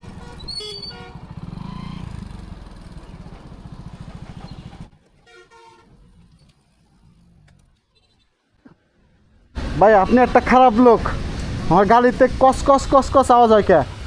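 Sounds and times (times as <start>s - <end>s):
horn toot: 0.0s - 2.2s, 5.2s - 6.5s
motorcycle engine pulsing: 0.0s - 8.3s.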